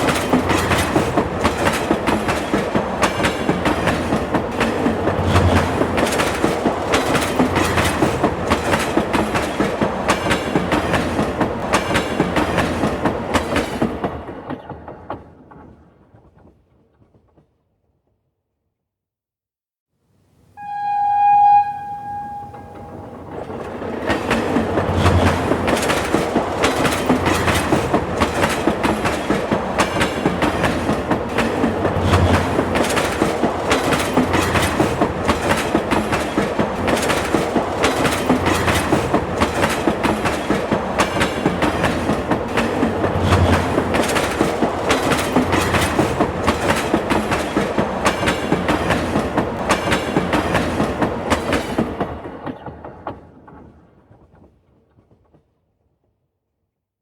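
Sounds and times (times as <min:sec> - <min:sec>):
wheels clacking over rails: 0:00.0 - 0:15.8, 0:22.6 - 0:54.6
train rumble: 0:00.0 - 0:16.6, 0:20.6 - 0:55.4
subway train horn: 0:20.6 - 0:23.6.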